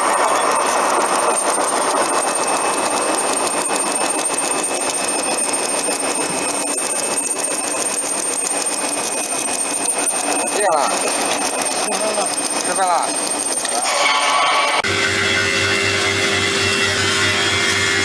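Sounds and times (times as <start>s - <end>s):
high-pitched whine: 13.0s - 18.0s.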